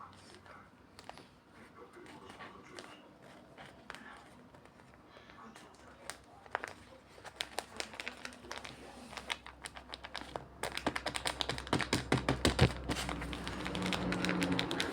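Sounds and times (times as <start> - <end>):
small taps on a hard surface: 10.8 - 13.0.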